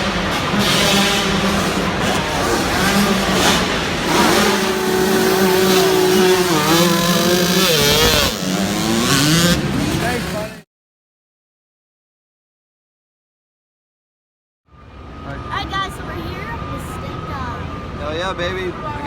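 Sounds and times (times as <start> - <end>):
dirt bike engines revving: 0.0 - 10.6.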